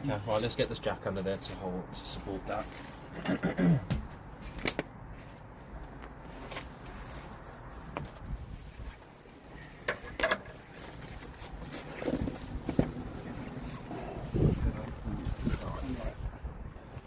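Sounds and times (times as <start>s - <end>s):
metal clicks and knocks: 9.9s - 10.6s.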